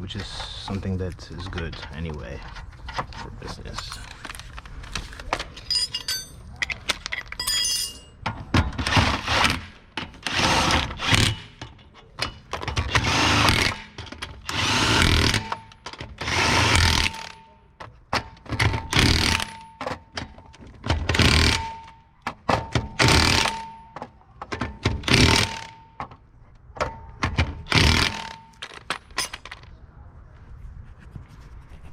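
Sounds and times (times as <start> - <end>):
impact wrench bursts: 12.8 - 17.4, 18.8 - 19.7, 21.0 - 21.9, 22.7 - 23.9, 24.8 - 26.1, 27.6 - 28.6.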